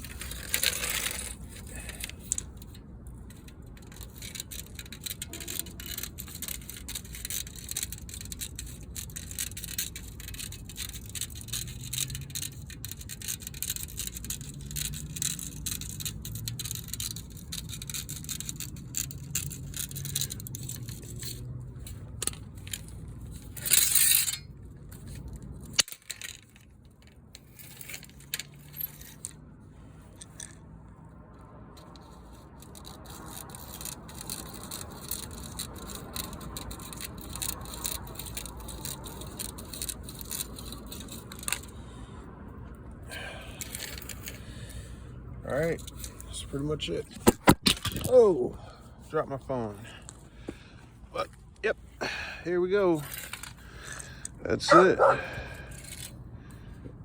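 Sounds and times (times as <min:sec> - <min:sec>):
scratches and clicks of screen mesh: 0:00.0 - 0:29.4.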